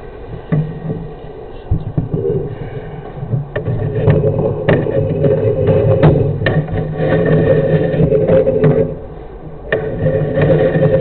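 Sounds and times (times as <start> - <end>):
mechanical hum: 0.0 - 11.0
sharp clicks and knocks: 3.1 - 11.0.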